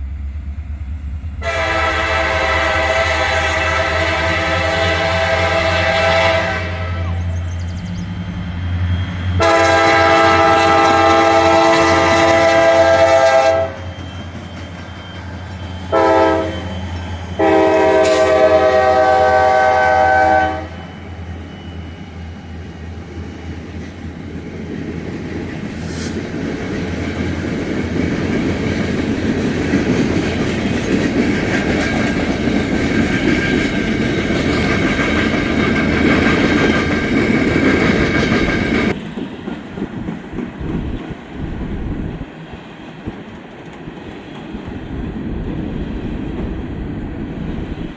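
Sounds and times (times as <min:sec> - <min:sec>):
train rumbling: 0:00.0 - 0:47.9
locomotive air horn blasts: 0:01.4 - 0:07.2, 0:09.4 - 0:13.9, 0:15.9 - 0:16.7, 0:17.4 - 0:20.9.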